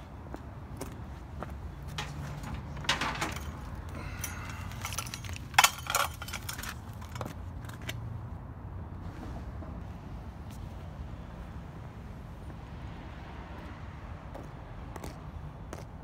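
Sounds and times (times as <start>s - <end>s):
metal scrap clanking and rattling: 1.9s - 7.3s.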